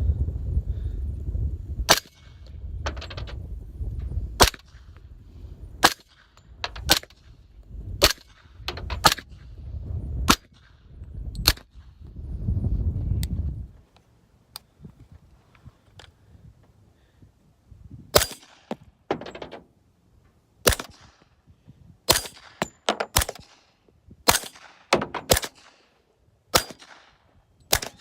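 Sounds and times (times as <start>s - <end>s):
low rumble: 0.0s - 5.8s
suppressed gunshots: 8.0s - 9.5s, 20.6s - 21.2s, 22.1s - 23.7s, 24.3s - 25.9s, 26.5s - 28.0s.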